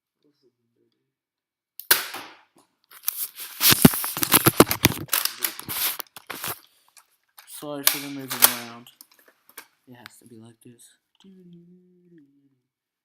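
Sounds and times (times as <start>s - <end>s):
recording device handling noise: 2.1s - 10.2s.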